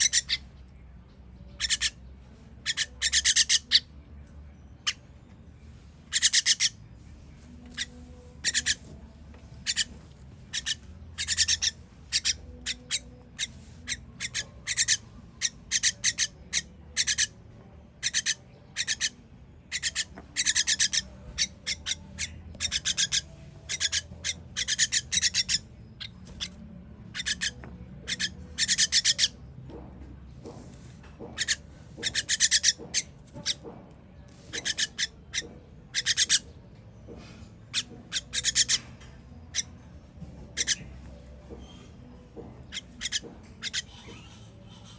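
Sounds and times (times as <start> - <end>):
baby birds begging calls: 0.0 - 0.6, 1.6 - 2.0, 2.6 - 3.9, 6.1 - 6.8, 7.7 - 8.8, 9.6 - 17.4, 18.0 - 29.4, 31.2 - 33.6, 34.4 - 36.6, 37.6 - 39.9, 40.5 - 41.0, 42.6 - 44.9.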